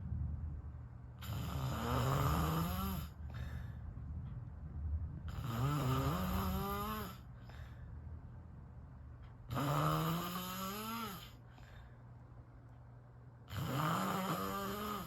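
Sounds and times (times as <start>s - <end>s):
person snoring: 1.2s - 3.5s, 5.3s - 7.2s, 9.5s - 11.4s, 13.5s - 15.0s.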